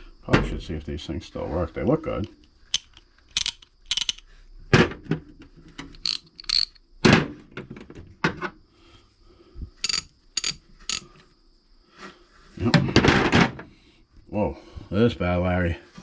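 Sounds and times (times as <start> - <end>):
ratchet wrenches clicking: 2.7 - 4.2, 5.8 - 6.8, 9.8 - 11.1
sharp ringing metal clicks: 9.8 - 11.1.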